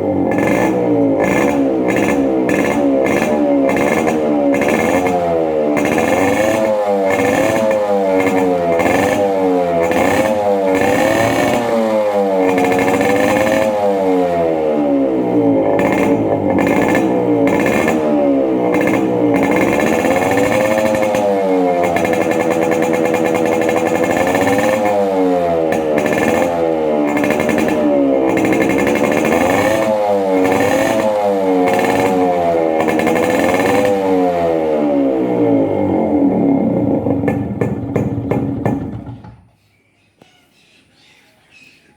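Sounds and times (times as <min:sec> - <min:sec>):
motorcycle engine revving: 0:00.0 - 0:39.6.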